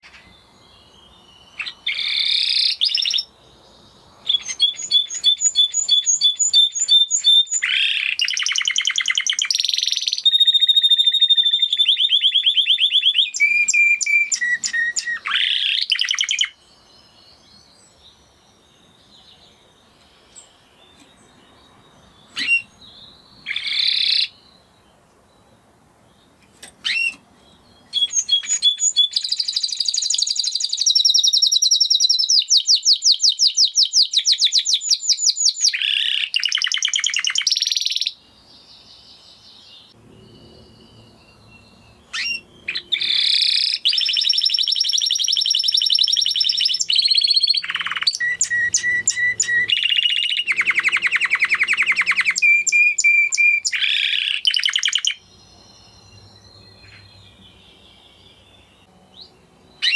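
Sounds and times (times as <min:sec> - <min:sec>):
canary singing trills: 0:00.0 - 0:59.9
single bird calls: 0:22.3 - 0:22.8, 0:23.4 - 0:24.4, 0:26.7 - 0:27.2, 0:59.2 - 0:59.9.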